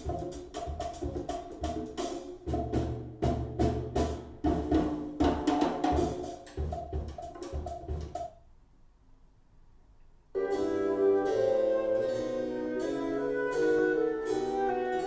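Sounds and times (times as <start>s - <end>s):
percussion music over speakers: 0.0s - 8.4s.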